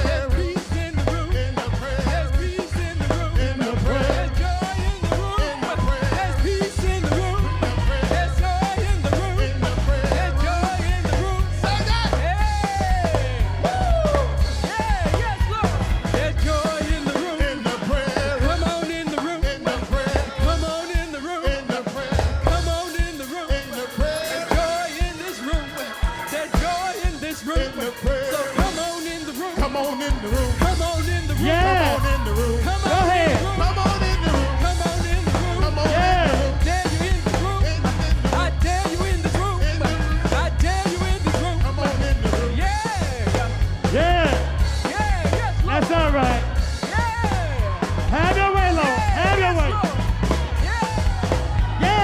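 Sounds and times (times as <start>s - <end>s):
heavy low bass: 0.0s - 19.0s, 22.2s - 22.9s, 30.2s - 52.0s
band with drums: 0.0s - 52.0s
wordless singing: 0.0s - 52.0s.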